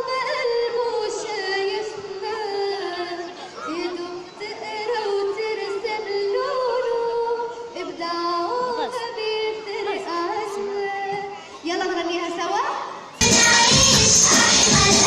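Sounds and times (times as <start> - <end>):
music: 13.2 - 15.0.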